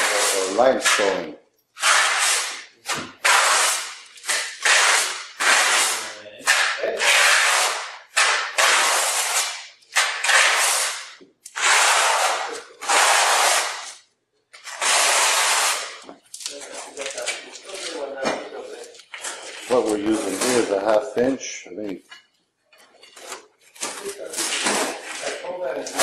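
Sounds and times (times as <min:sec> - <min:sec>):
trowel scraping tile adhesive: 0:00.0 - 0:18.0, 0:19.1 - 0:20.9.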